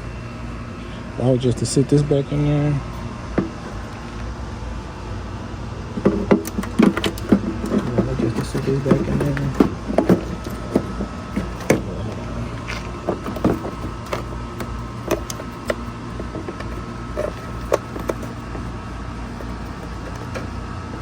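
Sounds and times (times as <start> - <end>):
steady low hum: 0.0 - 21.0
car parts clicking and knocking: 3.3 - 4.3, 5.9 - 21.0.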